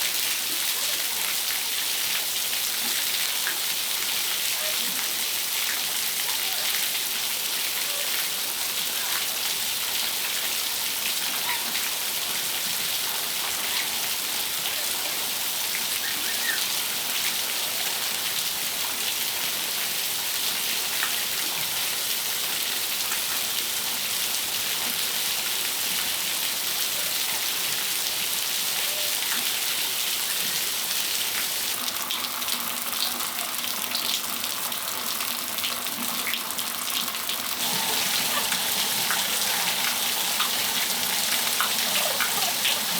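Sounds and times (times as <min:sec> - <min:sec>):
raindrops ticking: 0:31.8 - 0:42.9
steady rain hiss: 0:36.4 - 0:42.9.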